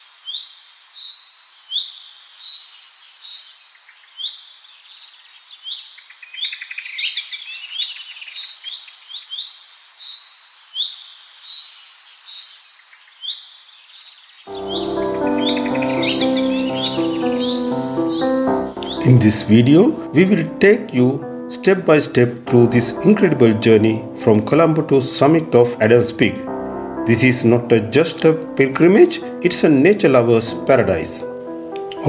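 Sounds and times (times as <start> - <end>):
music: 14.5 - 32.0
birds chirping and trilling: 14.6 - 19.2.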